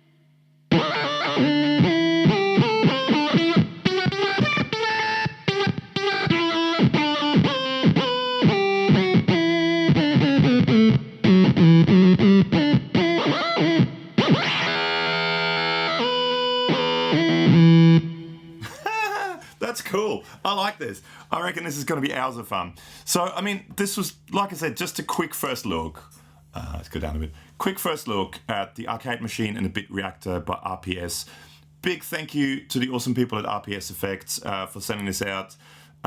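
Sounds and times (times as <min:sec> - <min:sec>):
synth-like electric guitar notes: 0:00.7 - 0:18.6.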